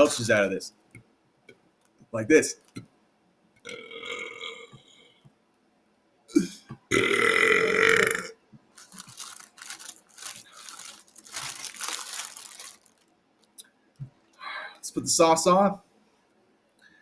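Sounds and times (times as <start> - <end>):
crinkling and rustling: 0.0 - 0.6, 8.6 - 14.2
man belching: 3.7 - 4.9, 6.3 - 8.4.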